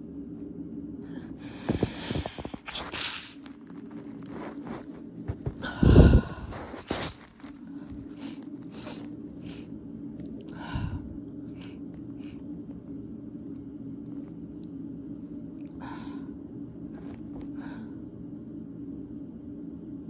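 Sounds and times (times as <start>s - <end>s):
short breathing puffs: 5.4s - 9.7s
voiced inhale: 10.5s - 12.4s, 17.4s - 18.0s.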